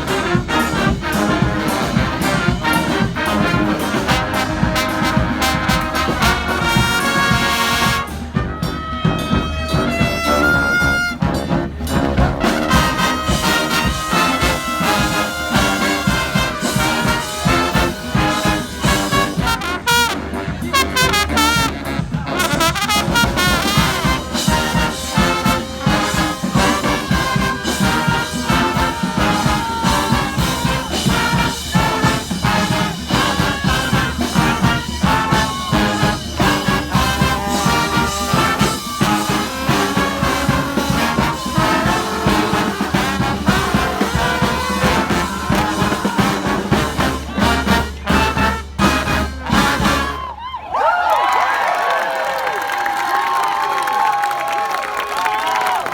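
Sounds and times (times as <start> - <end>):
high horn line wavering: 0.0 - 50.3
brass band playing upbeat tune: 0.0 - 50.6.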